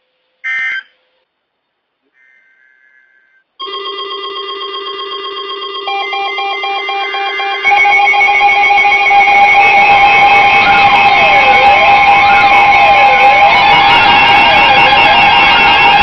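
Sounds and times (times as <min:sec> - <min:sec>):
radio alarms steady tones: 0:03.3 - 0:16.0
digital alert header tones: 0:03.6 - 0:15.2
fast beeping alarm: 0:03.6 - 0:16.0.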